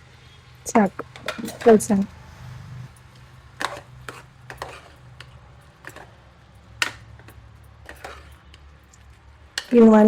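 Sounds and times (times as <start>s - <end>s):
ladle stirring thick gravy: 3.0s - 9.9s.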